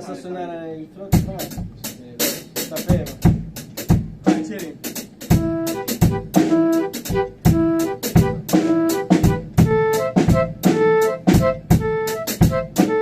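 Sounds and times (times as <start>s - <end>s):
drum kit beat: 1.1s - 13.0s
keyboard melody: 5.3s - 13.0s.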